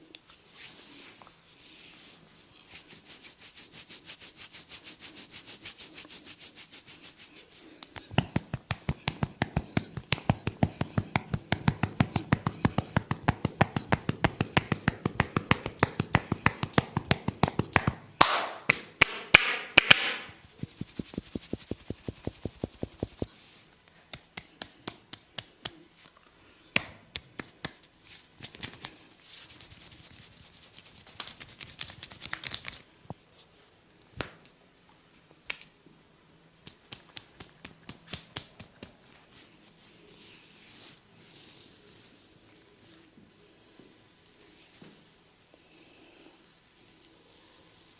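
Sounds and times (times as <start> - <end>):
hands rubbing skin: 0.2 - 26.2, 26.8 - 32.9, 36.6 - 43.0
hands tapping on head: 7.8 - 23.3, 24.1 - 25.8, 26.8 - 29.0, 36.6 - 39.0.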